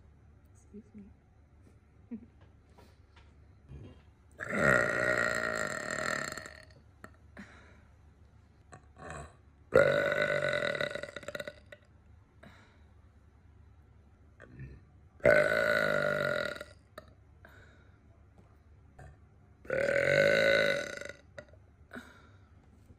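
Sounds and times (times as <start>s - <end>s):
woman burping: 3.7s - 7.5s, 8.8s - 11.8s, 14.4s - 17.1s, 19.0s - 22.2s.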